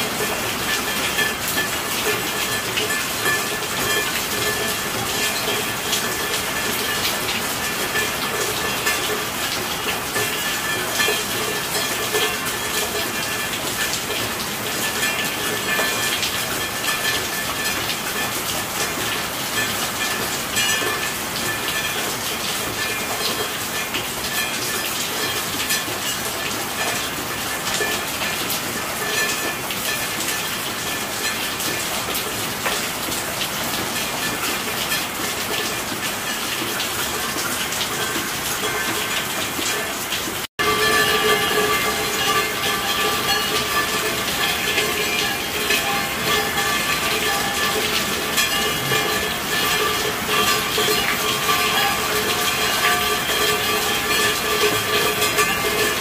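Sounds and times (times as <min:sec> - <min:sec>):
heavy rain falling: 0:00.0 - 0:56.0.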